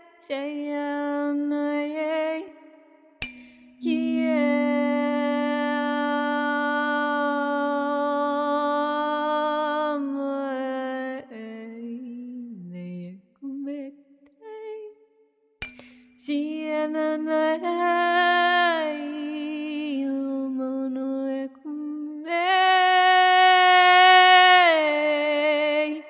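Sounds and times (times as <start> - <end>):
wavering vocal sounds: 0.0 - 13.9
person chanting a long tone: 3.8 - 10.1.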